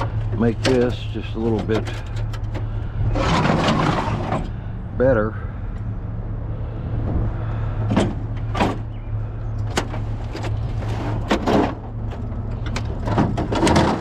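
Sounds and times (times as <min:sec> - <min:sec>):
scrap metal knocks and clunks: 0:00.0 - 0:04.6, 0:07.8 - 0:09.0, 0:09.6 - 0:14.0
steady low hum: 0:00.0 - 0:14.0.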